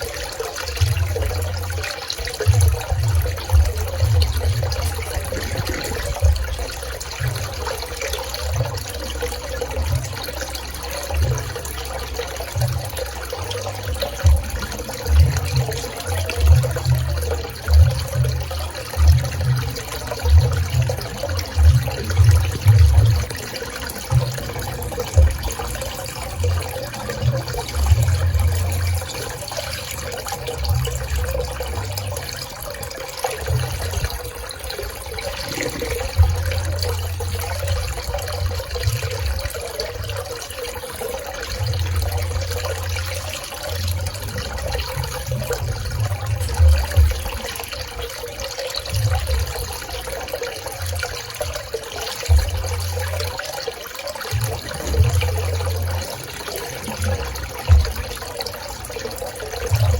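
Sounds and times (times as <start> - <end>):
pool water running and splashing: 0.0 - 59.9
uneven low rumble: 2.5 - 10.1.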